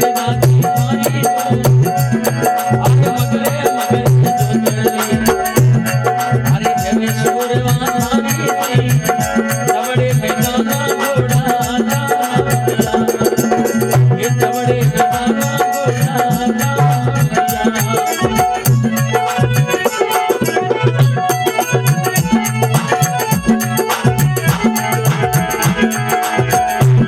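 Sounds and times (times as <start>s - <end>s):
fast percussion rhythm: 0.0s - 27.0s
repeating instrumental melody: 11.6s - 27.0s.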